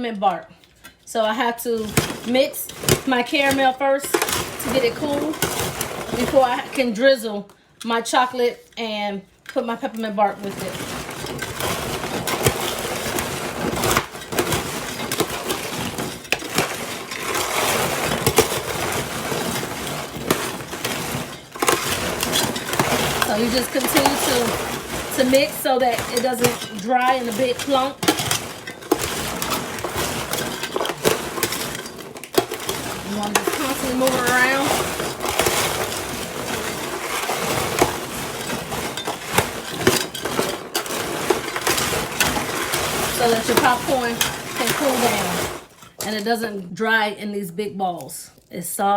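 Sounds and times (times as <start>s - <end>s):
popcorn being stirred: 0.2s - 46.8s.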